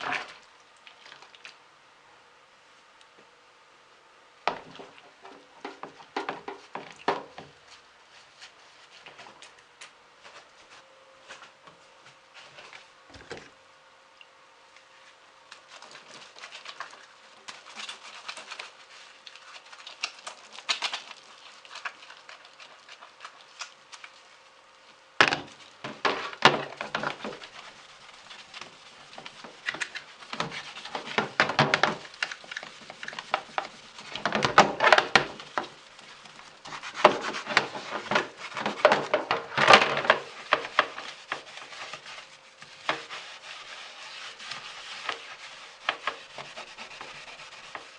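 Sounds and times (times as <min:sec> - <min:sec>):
scrubbing and scraping: 0:00.0 - 0:00.4, 0:15.0 - 0:24.4, 0:25.4 - 0:47.9
faint steady hum: 0:00.0 - 0:47.9.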